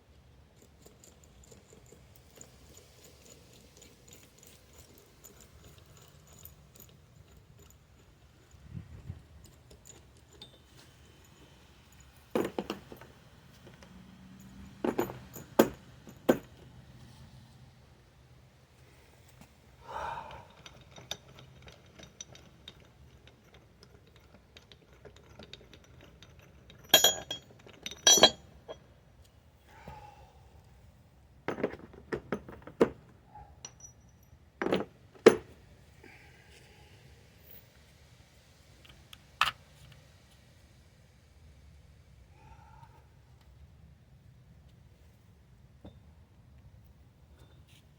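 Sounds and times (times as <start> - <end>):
metal tools clinking and knocking: 0.6 - 16.7, 20.5 - 28.9, 31.5 - 35.6.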